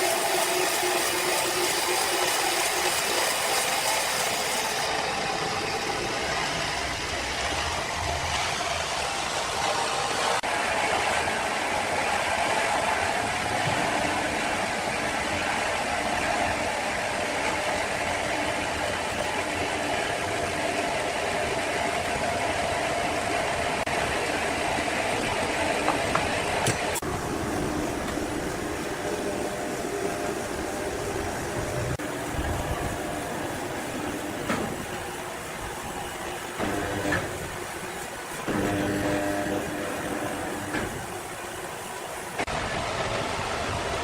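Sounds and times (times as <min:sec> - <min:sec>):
sawmill saw cutting log: 0:00.0 - 0:23.0, 0:31.5 - 0:42.4.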